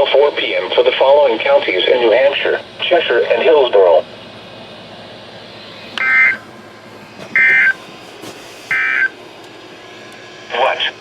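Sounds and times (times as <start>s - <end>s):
digital data tone bursts: 6.0s - 6.4s, 8.7s - 9.1s
radio static: 6.0s - 6.4s, 7.3s - 7.9s.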